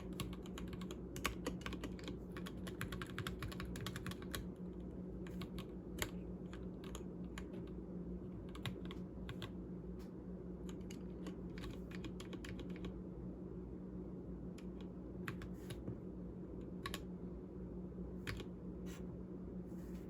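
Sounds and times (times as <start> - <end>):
mechanical keyboard typing: 0.0 - 4.6, 5.2 - 7.8, 8.4 - 9.5, 10.6 - 12.9, 18.2 - 18.5
steady low hum: 0.0 - 20.0.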